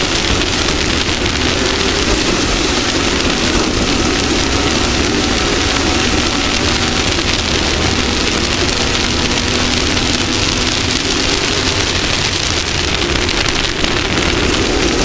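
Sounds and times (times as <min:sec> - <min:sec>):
race vehicle engine at speed: 0:00.0 - 0:15.0
wind and terrain noise: 0:00.0 - 0:15.0.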